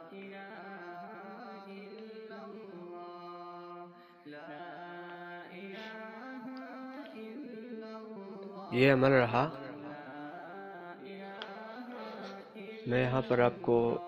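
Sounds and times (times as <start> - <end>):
slow chant-like music: 0.0 - 14.0.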